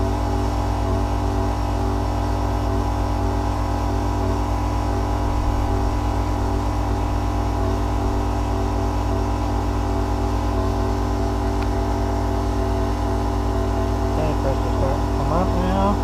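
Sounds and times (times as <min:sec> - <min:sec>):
pump motor humming: 0:00.0 - 0:16.0.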